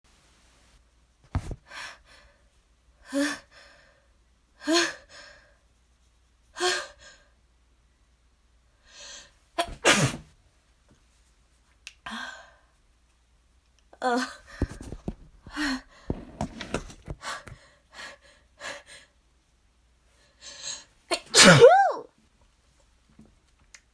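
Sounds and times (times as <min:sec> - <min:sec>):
person sneezing: 0:09.6 - 0:10.3, 0:21.1 - 0:22.1
person gasping before sneeze: 0:20.6 - 0:22.0.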